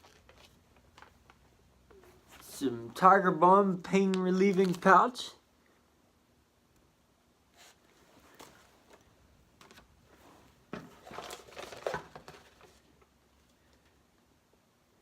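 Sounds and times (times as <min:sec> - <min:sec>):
packaging crinkling and rustling: 0:00.0 - 0:02.6, 0:04.0 - 0:05.2, 0:10.7 - 0:13.1.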